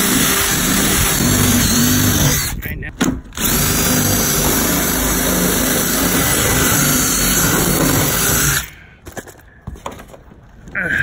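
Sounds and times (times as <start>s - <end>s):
electric drill running hard: 0.0s - 2.5s, 3.4s - 8.7s.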